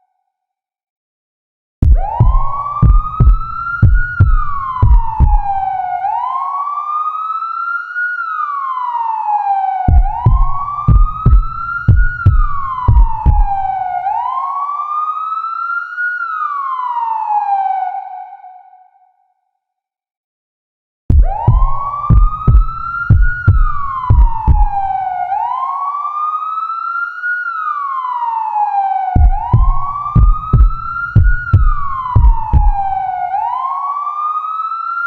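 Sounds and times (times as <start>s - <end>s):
deep rhythmic thumps: 1.8s - 5.7s, 9.9s - 13.8s, 21.1s - 25.1s, 29.2s - 33.1s
wailing electronic siren: 1.8s - 19.2s, 21.1s - 35.0s.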